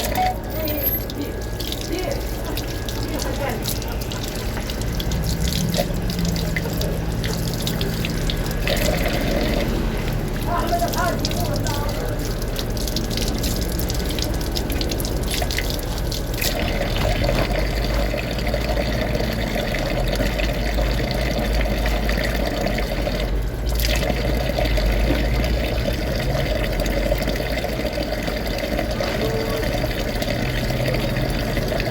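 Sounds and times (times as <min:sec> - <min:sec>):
floodwater rushing: 0:00.0 - 0:19.5.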